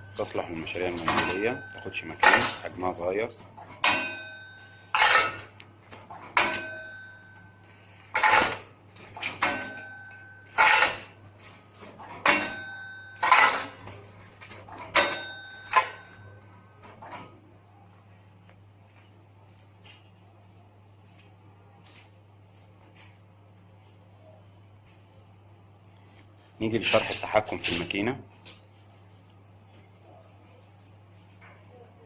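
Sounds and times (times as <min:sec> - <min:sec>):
packing machine clatter: 0:00.0 - 0:02.8, 0:08.1 - 0:16.2.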